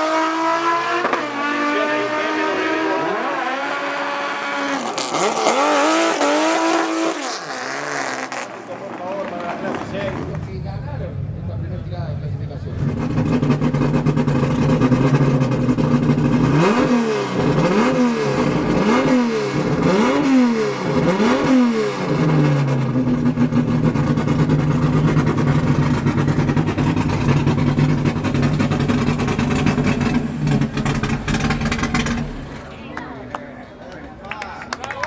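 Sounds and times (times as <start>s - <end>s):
car engine idling and revving: 0.0s - 33.4s.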